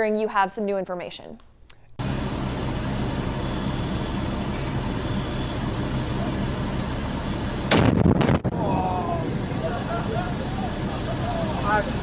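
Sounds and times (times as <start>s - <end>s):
engine idling hum: 2.0s - 12.0s
loud explosion blast: 7.7s - 9.6s.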